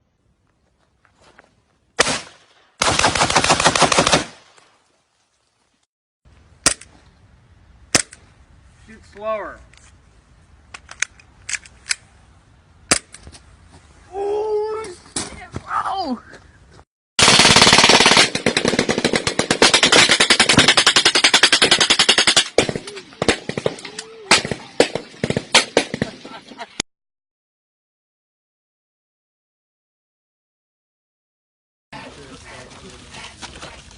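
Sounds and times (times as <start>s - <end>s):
automatic gunfire burst: 2.0s - 4.4s, 17.2s - 26.0s
gunshots: 2.0s - 4.6s, 17.2s - 26.3s
single gunshots: 2.0s - 4.6s.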